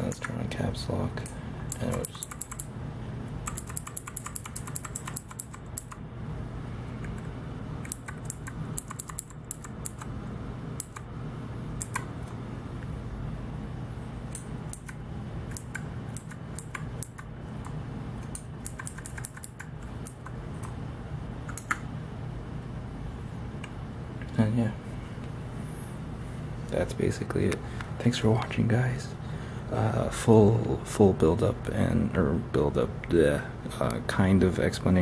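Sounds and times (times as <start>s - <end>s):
low steady hum: 0.0s - 35.0s
mechanical keyboard typing: 1.7s - 2.7s, 3.4s - 6.0s, 7.0s - 10.1s, 10.8s - 11.1s, 11.8s - 12.4s, 14.3s - 20.8s, 21.4s - 21.8s.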